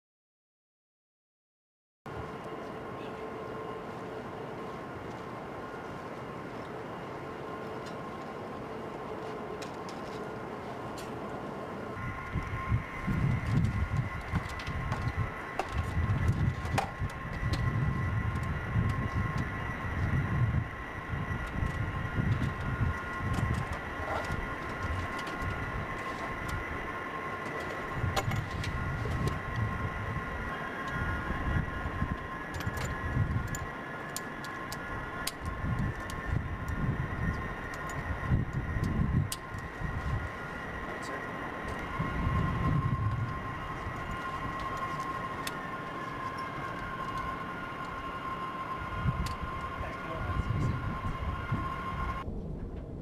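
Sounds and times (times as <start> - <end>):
jet engine turbine whine: 2.1 - 53.0
low rumble: 11.8 - 33.8, 34.4 - 53.0.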